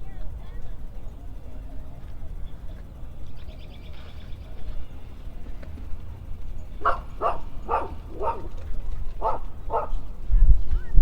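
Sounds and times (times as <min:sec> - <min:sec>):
low background rumble: 0:00.0 - 0:11.0
dog barking: 0:06.8 - 0:10.1.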